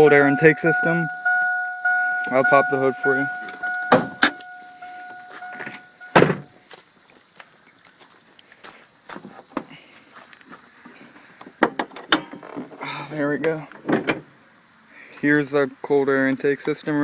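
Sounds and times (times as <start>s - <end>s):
car warning chime pinging: 0.0s - 6.5s
car door slamming: 1.2s - 4.4s, 5.6s - 6.5s
faint footsteps: 1.3s - 11.6s.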